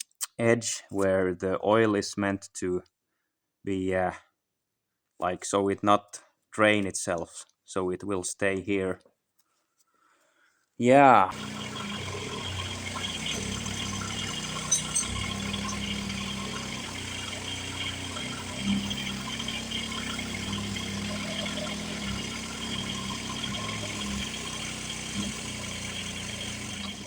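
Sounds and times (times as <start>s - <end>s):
steady mechanical hum: 11.3s - 27.0s.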